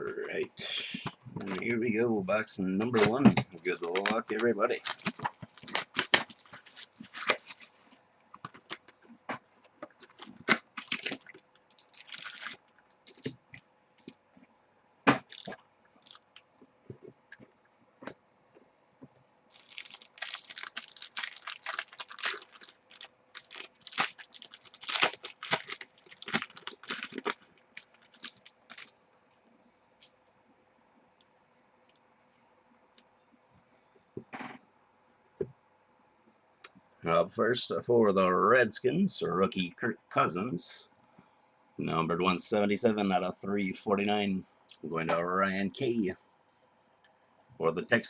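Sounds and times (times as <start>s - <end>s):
plastic wrap crinkling and tearing: 3.6s - 7.8s, 10.0s - 13.3s, 15.2s - 16.4s, 19.5s - 28.9s.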